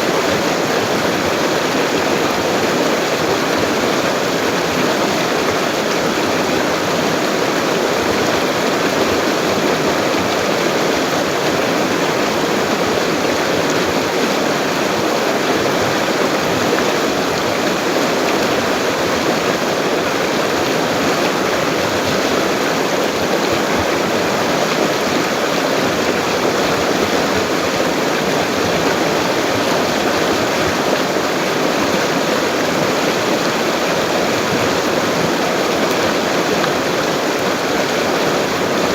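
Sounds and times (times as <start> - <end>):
fast-flowing river: 0.0 - 38.9.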